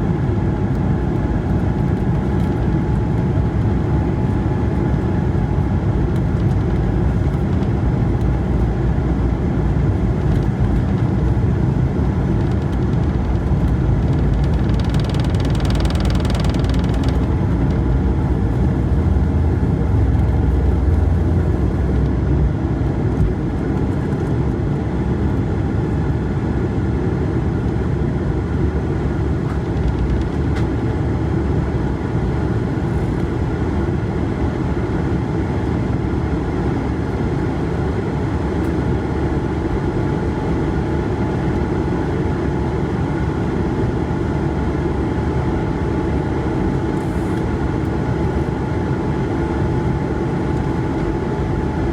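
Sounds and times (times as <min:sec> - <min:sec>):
faint steady engine whine: 0:00.0 - 0:51.9
jet engine roar in cabin: 0:00.0 - 0:51.9.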